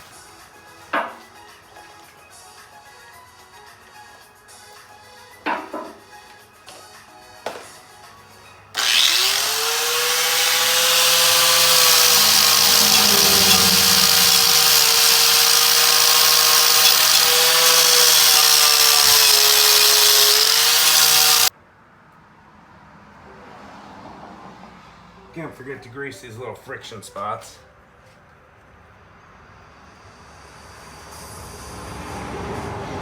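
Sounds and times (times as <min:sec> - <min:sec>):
power tool whine: 0:08.8 - 0:21.5
wire wheel scratching metal: 0:08.8 - 0:21.5.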